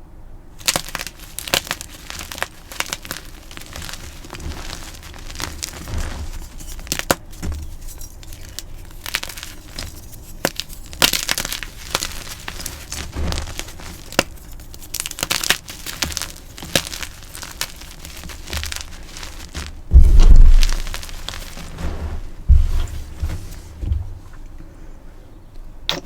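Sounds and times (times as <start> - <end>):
chalk crunching: 0.6 - 24.2
soft dull thuds: 18.8 - 24.7.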